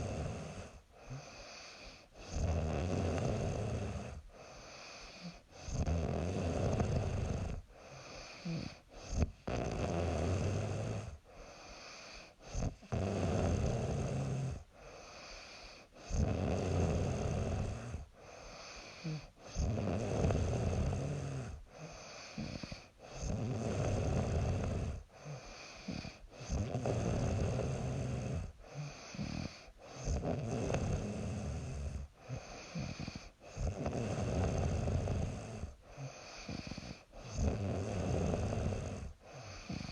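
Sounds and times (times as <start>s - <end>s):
quiet breathing: 0.0s - 39.9s
woman snoring: 0.0s - 39.9s.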